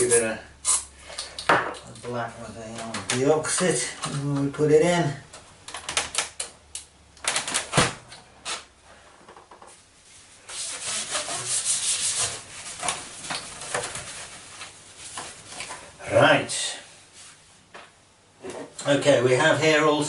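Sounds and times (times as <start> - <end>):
rough rubbing and scraping: 10.0 - 15.6.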